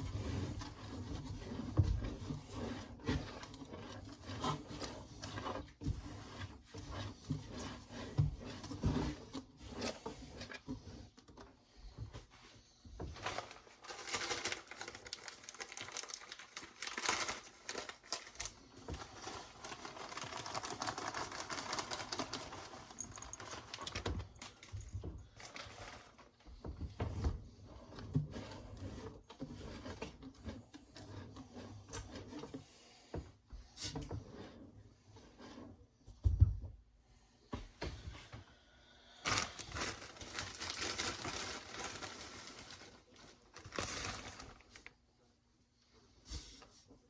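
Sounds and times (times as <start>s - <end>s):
leaf litter rustling by hand: 13.1s - 24.7s, 39.1s - 44.9s.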